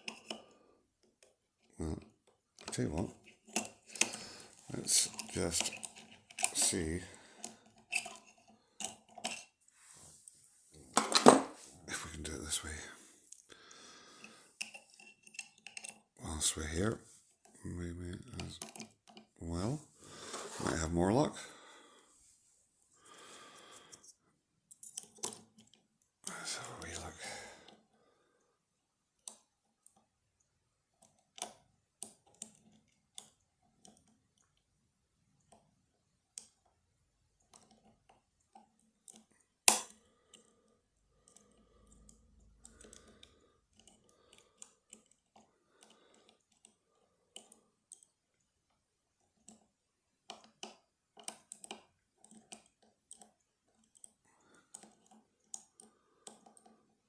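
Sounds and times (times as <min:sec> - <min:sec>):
lock-picking tools clicking: 0:03.4 - 0:09.5, 0:14.2 - 0:16.0, 0:18.3 - 0:19.4, 0:38.5 - 0:40.5, 0:49.3 - 0:56.8.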